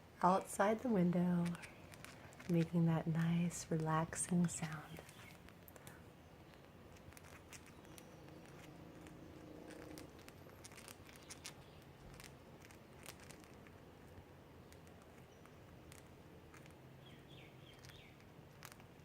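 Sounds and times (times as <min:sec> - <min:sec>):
birds grinding beaks: 0:00.6 - 0:13.8.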